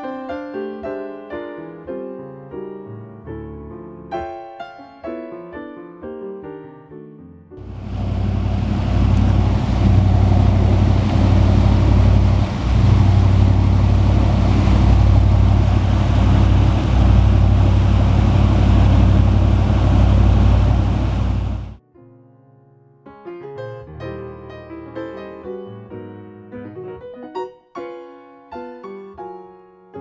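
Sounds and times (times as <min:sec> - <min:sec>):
boat engine drone: 0:07.6 - 0:21.8
rushing water: 0:07.6 - 0:21.8
wind noise: 0:07.6 - 0:21.8.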